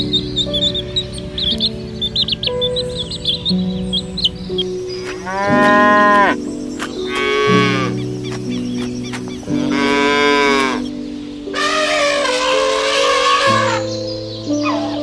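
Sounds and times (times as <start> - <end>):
background music: 0.0 - 15.0
cow mooing: 5.0 - 6.5, 7.1 - 8.1, 9.5 - 10.9, 11.5 - 14.0.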